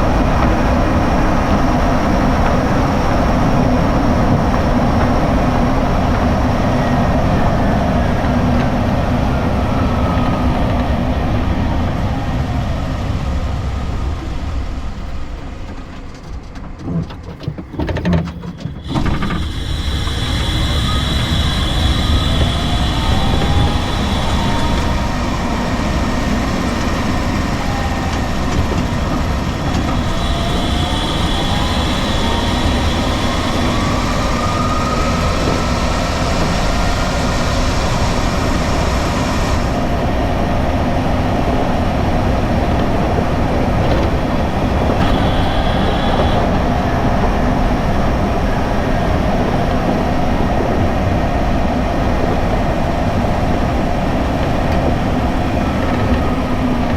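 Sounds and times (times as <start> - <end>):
road noise rumble: 0.0 - 56.9
high thin whine: 18.7 - 40.6
electric motor whine: 18.9 - 40.0, 43.8 - 46.6.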